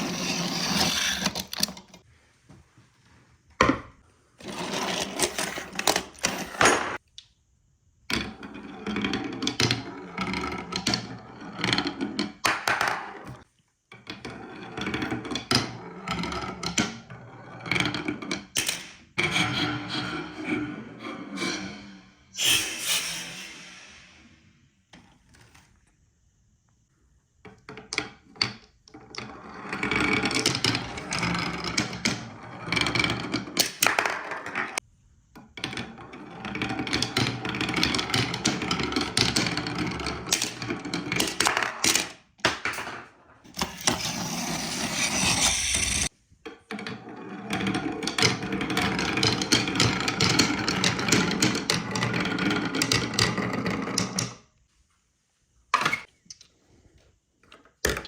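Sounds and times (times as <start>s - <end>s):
marbles rolling down wooden track: 4.4s - 7.0s, 27.7s - 34.8s, 35.6s - 46.1s, 46.8s - 54.4s.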